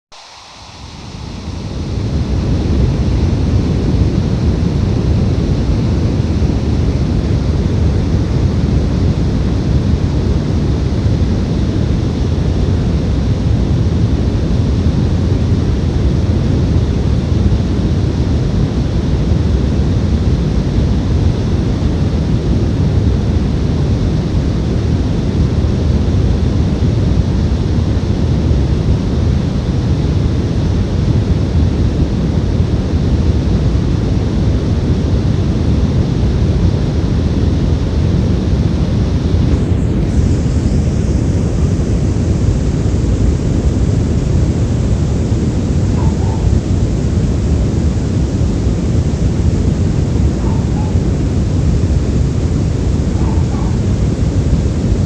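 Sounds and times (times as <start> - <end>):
brown noise: 0.1 - 55.0.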